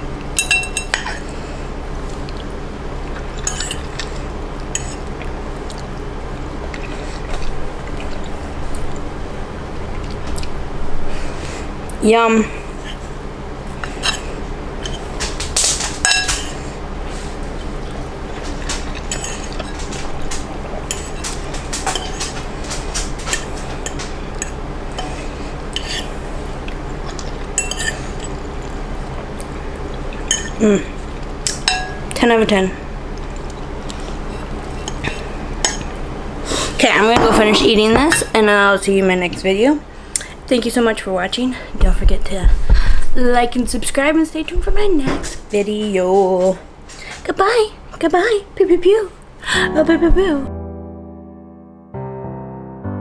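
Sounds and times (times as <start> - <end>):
steady low hum: 0.0 - 50.5
chewing noises: 2.0 - 10.6, 12.7 - 31.7, 33.1 - 37.7
fork clinking on plate: 16.0 - 16.6, 18.4 - 25.2, 27.6 - 28.3, 31.5 - 32.0.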